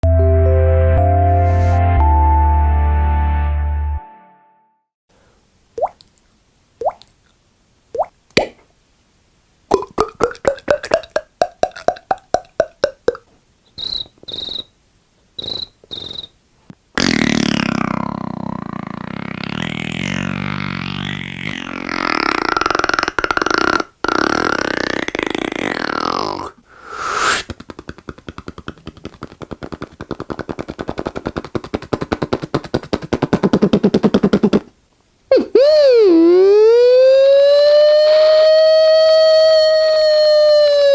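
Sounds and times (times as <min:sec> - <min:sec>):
hollow tongue clicks: 0:09.7 - 0:14.7, 0:27.4 - 0:34.7
short hissing whistles: 0:13.8 - 0:14.8, 0:15.4 - 0:16.4, 0:26.7 - 0:27.5
mouth-made siren wail: 0:35.3 - 0:40.9.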